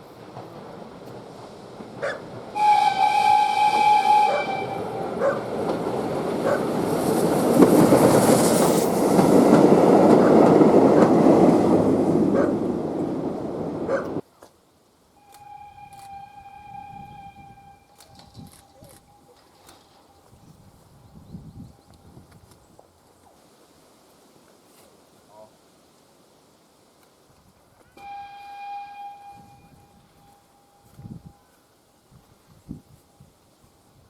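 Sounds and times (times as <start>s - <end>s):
train rolling rumble: 0.0s - 14.2s
steam locomotive whistle: 2.0s - 9.2s, 15.2s - 20.6s, 27.9s - 31.6s.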